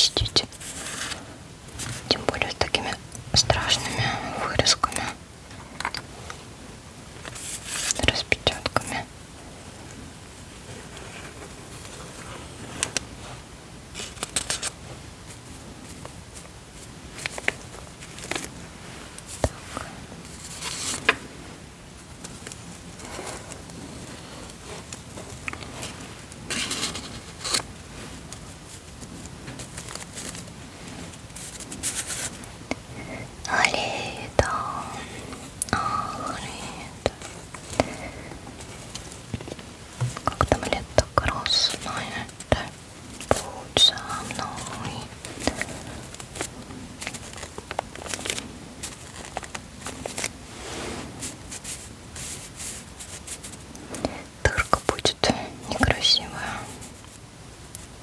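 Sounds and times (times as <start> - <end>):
paper rustling: 0.5 - 2.1, 10.7 - 19.6, 22.1 - 32.5, 37.1 - 53.7
small taps and scrapes: 19.2 - 19.9, 37.0 - 41.9
small clicks and taps: 38.9 - 40.7
handling rustling: 44.2 - 53.8.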